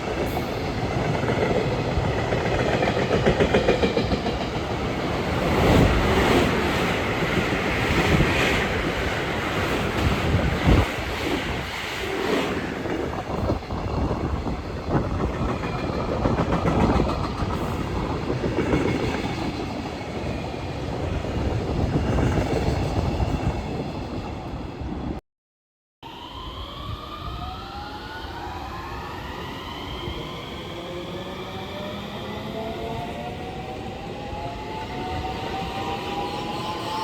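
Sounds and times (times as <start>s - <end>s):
train wheels clacking over rails: 15.1s - 19.7s.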